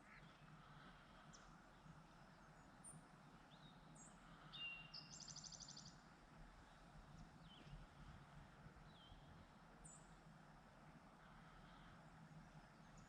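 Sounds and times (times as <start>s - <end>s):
faint birdsong chirps and trill: 0.0s - 13.0s.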